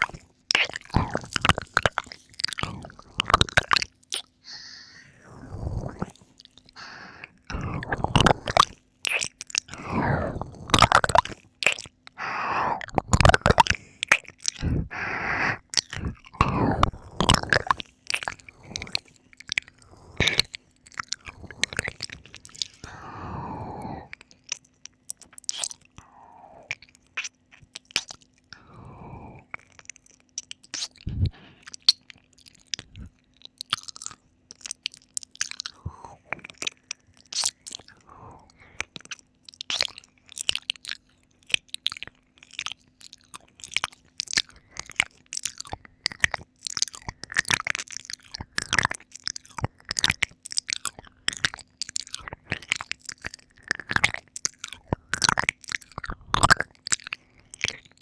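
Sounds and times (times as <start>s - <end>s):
wet mouth licks and smacks: 0.0s - 4.8s, 5.5s - 12.2s, 12.8s - 23.0s, 23.8s - 26.1s, 26.7s - 28.6s, 29.4s - 58.0s
breathy sounds: 0.0s - 31.9s, 35.4s - 39.9s.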